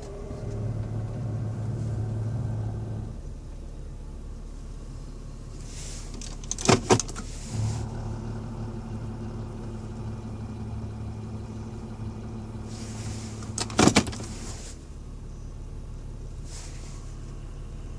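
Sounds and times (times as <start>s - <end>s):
grinding drone: 0.0s - 3.2s, 7.5s - 11.2s.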